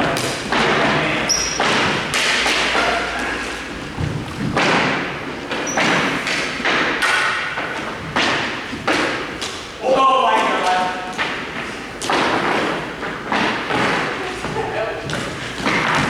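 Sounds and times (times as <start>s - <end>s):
hockey sticks and shots thudding: 1.5s - 3.0s, 4.0s - 9.6s, 12.0s - 14.1s.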